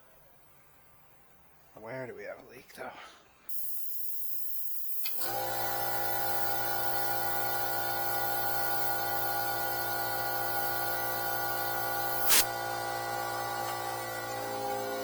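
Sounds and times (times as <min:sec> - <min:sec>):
compressed air hissing: 0:10.1 - 0:12.6.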